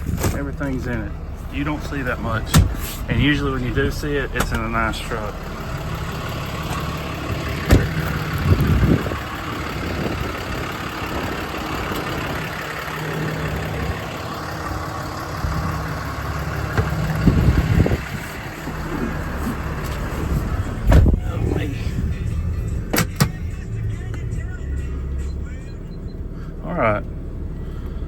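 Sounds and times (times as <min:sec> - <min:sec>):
clattering handling noises: 0:00.0 - 0:01.5
diesel engine idling: 0:00.0 - 0:28.0.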